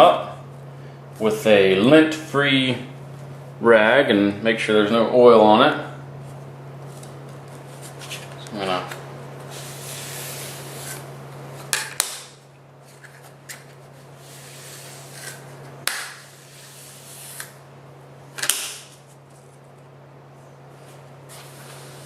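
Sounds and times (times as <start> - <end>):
steady low hum: 0.0 - 22.0
hand rubbing workpieces: 9.4 - 11.1, 12.9 - 17.6.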